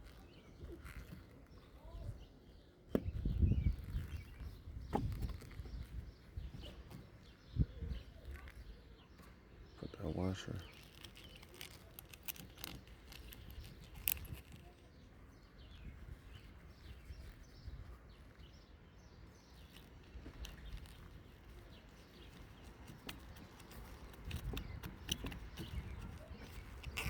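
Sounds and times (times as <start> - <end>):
birds chirping: 0.0 - 27.0
small metal clicks and taps: 10.7 - 14.8, 22.2 - 27.0.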